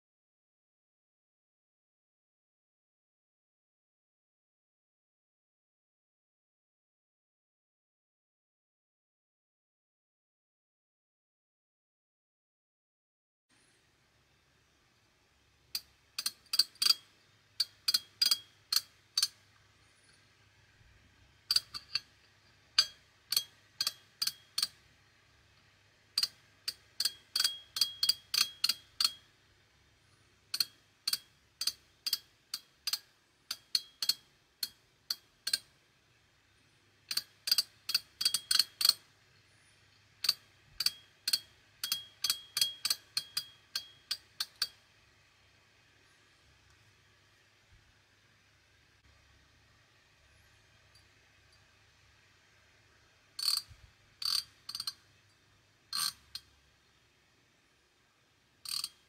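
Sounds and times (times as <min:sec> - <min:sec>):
ratchet pawl clicking: 0:15.7 - 0:19.4, 0:21.5 - 0:22.1, 0:22.8 - 0:24.8, 0:26.2 - 0:29.3, 0:30.5 - 0:35.7, 0:37.1 - 0:39.1, 0:40.2 - 0:44.8, 0:53.4 - 0:55.0, 0:55.9 - 0:56.5, 0:58.6 - 0:59.0.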